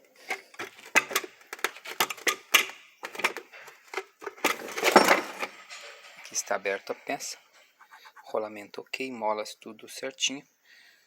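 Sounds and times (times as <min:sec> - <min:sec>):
metal tools clinking: 0:03.1 - 0:07.3
scraping clatter: 0:03.3 - 0:07.4.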